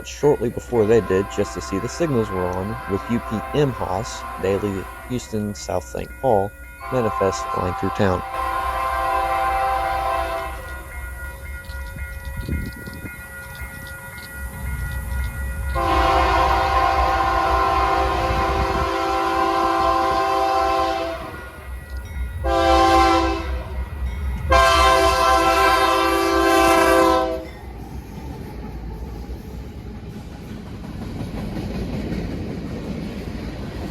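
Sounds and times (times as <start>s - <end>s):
train rumble and wheel clatter: 0.0s - 33.9s
locomotive air horn blasts: 0.7s - 5.4s, 6.8s - 10.7s, 15.8s - 21.6s, 22.4s - 23.6s, 24.5s - 27.5s.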